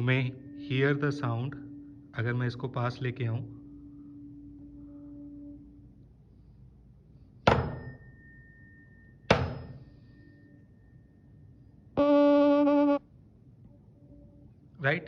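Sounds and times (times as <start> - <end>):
tuning fork struck: 0.0 - 13.0
tuning fork ringing: 0.0 - 14.6
loud low buzzing tone: 12.0 - 13.1.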